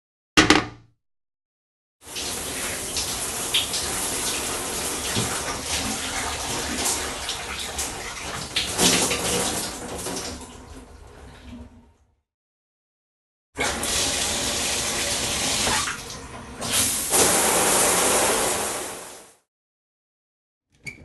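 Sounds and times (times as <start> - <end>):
water running from a tap: 2.0 - 11.1, 13.6 - 19.3.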